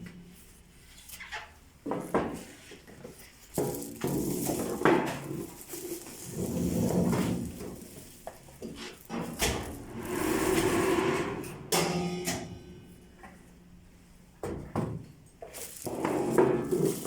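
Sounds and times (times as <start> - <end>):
metal clanks and knocks: 9.1 - 13.4.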